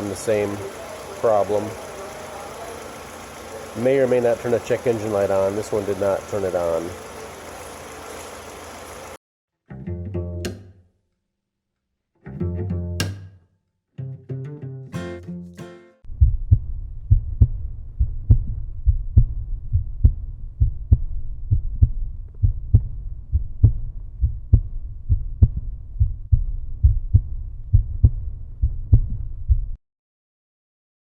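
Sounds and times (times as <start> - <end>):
deep pulsing bass beat: 16.1 - 29.8.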